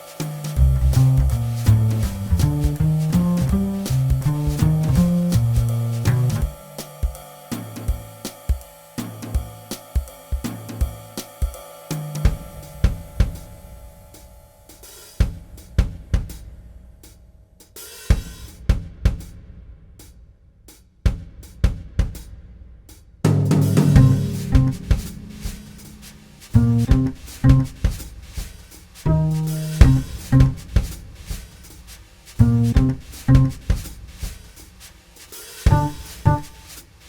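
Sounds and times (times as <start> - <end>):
drum kit break: 0.0 - 17.2, 23.2 - 37.0
instrumental jazz band: 0.5 - 6.6, 23.3 - 31.7, 32.4 - 34.4, 35.6 - 36.9
pulsing bass line: 0.6 - 6.6, 23.4 - 27.9, 29.1 - 30.9, 32.4 - 33.8, 35.7 - 36.6.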